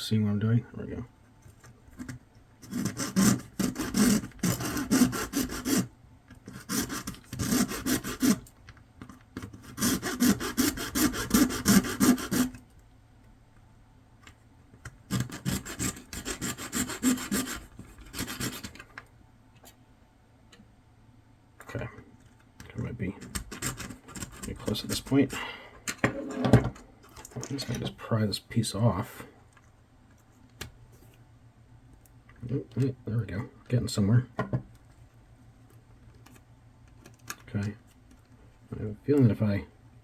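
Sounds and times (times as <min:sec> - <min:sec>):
hand saw cutting plastic: 0:02.6 - 0:05.9, 0:06.5 - 0:08.5, 0:09.6 - 0:12.6, 0:15.1 - 0:18.8.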